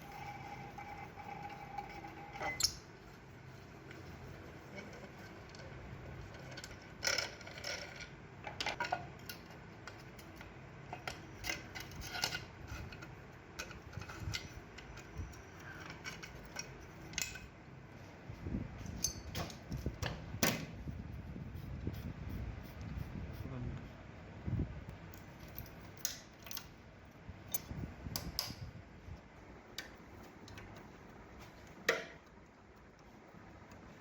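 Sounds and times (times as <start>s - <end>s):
metal parts clicking and clinking: 6.3s - 17.5s, 18.8s - 19.7s, 25.1s - 26.8s, 27.4s - 28.6s.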